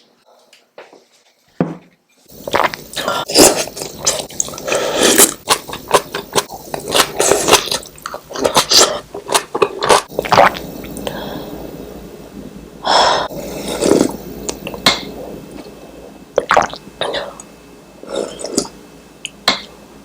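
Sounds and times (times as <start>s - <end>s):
close chewing and biting: 2.4s - 10.4s.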